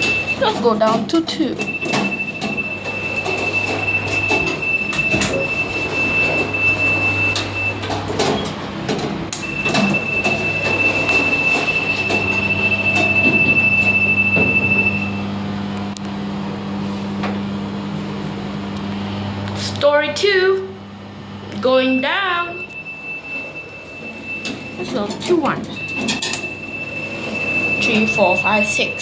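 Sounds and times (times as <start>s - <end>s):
lift car low hum: 0.0s - 29.0s
lift high whine: 1.6s - 29.0s.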